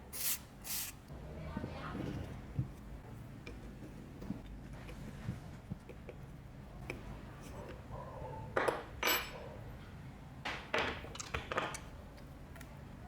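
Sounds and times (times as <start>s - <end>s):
tools clinking and scraping: 8.7s - 9.4s.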